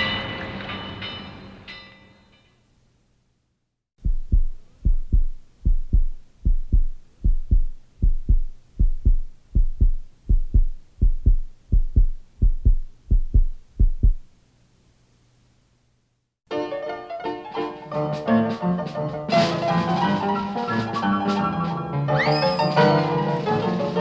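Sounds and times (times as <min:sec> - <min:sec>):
heartbeat thumps: 0:04.0 - 0:14.3.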